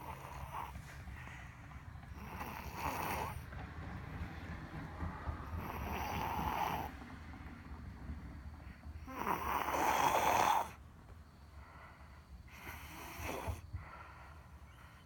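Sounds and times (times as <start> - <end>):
person snoring: 0.0 - 0.7, 2.2 - 3.4, 9.0 - 10.8, 12.5 - 13.6.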